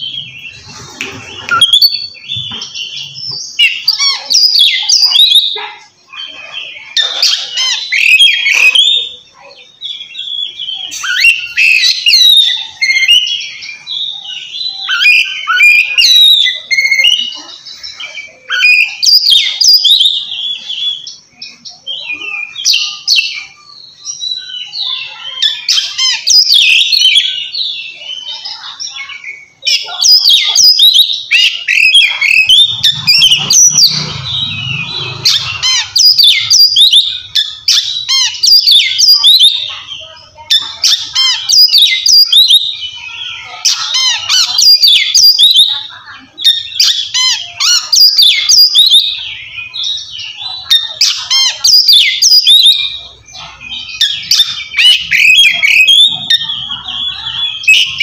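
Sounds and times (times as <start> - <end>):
songbird whistles and chirps: 0.0 - 5.6.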